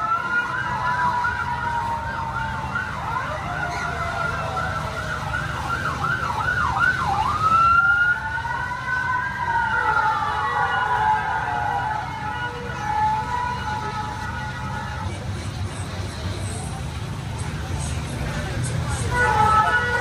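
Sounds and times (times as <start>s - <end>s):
toy fire-truck sirens: 0.0s - 15.2s.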